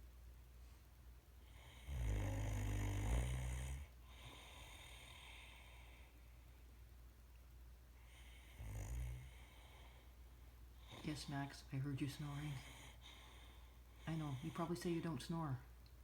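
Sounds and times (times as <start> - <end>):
dog snoring: 1.4 - 6.0, 8.0 - 10.0, 10.8 - 15.2
dog breathing: 8.0 - 15.3.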